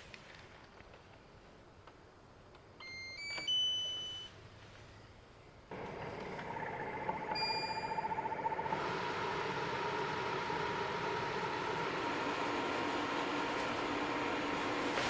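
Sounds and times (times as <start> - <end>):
three-tone chime: 2.8 - 4.3
fan rushing air: 5.7 - 15.0.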